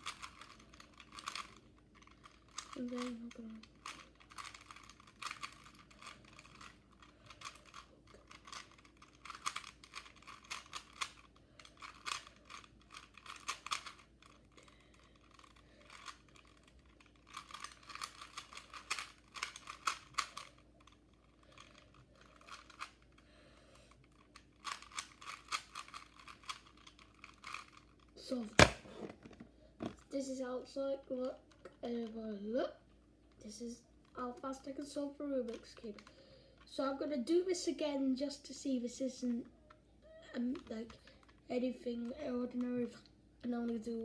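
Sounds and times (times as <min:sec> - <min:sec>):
puzzle cube plastic clicking: 0:00.0 - 0:23.2, 0:23.9 - 0:29.4, 0:35.4 - 0:36.7.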